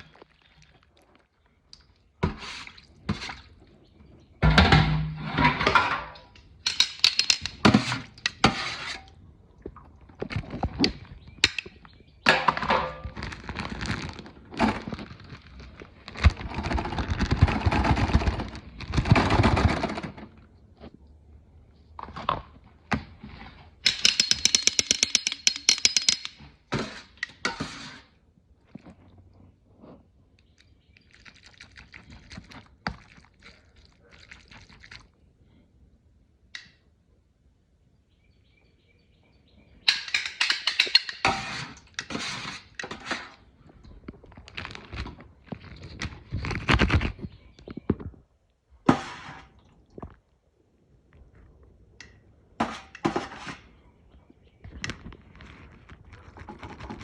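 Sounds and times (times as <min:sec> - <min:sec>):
kitchen knocks and clatters: 0:04.4 - 0:08.4, 0:11.4 - 0:13.2, 0:23.8 - 0:27.6, 0:39.9 - 0:43.4
fast rattle: 0:23.9 - 0:26.4.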